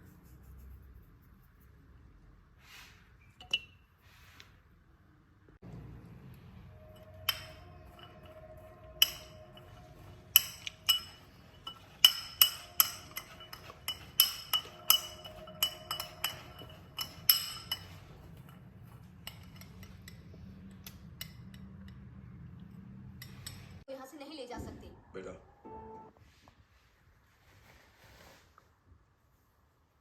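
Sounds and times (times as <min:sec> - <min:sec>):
utensil clinking against glass: 0:06.9 - 0:20.2.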